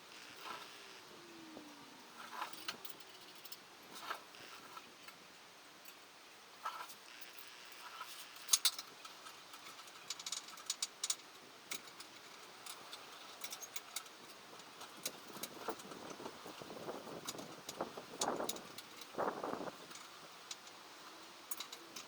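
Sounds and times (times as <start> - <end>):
light metallic clicks and clinks: 6.7 - 16.2.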